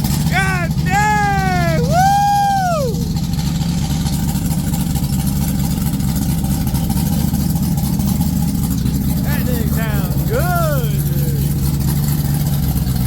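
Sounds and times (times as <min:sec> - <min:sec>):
car engine idling: 0:00.0 - 0:13.0
person whooping: 0:00.3 - 0:03.1, 0:09.2 - 0:11.6.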